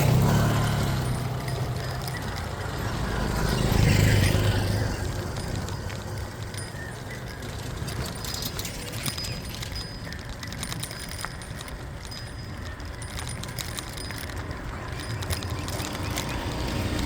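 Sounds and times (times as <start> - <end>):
vehicle engine passing close: 0.0 - 6.7
light metallic clinks: 0.0 - 17.0.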